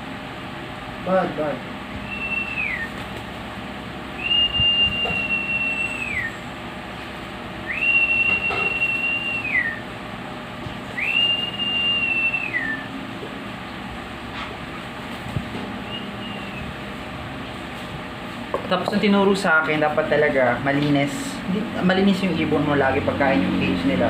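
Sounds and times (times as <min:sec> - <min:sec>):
high whistle dropping in pitch: 0:04.2 - 0:06.4, 0:07.7 - 0:09.8.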